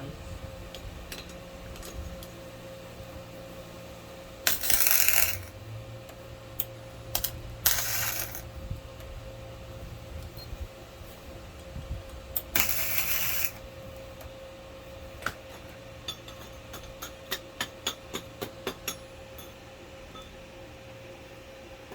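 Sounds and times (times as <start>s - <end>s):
welder hum: 4.4s - 15.4s
welding arc crackling: 4.5s - 5.6s, 7.2s - 8.4s, 12.4s - 13.6s.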